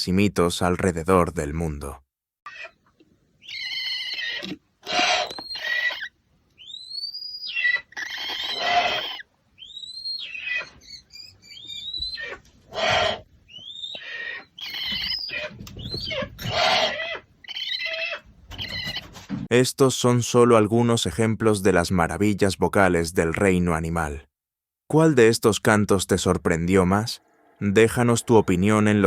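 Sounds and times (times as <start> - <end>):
owl hissing screeches: 3.4 - 19.1.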